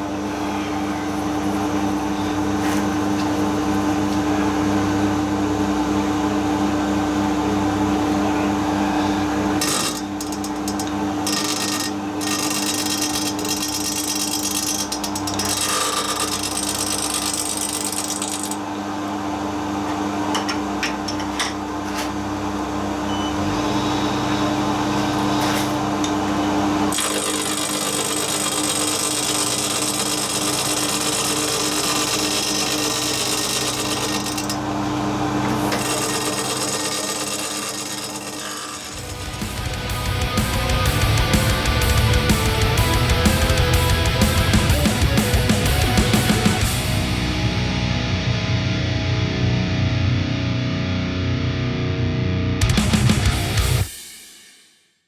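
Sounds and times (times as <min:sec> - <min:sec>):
milling cutter cutting steel: 0:09.6 - 0:18.6, 0:24.9 - 0:39.8.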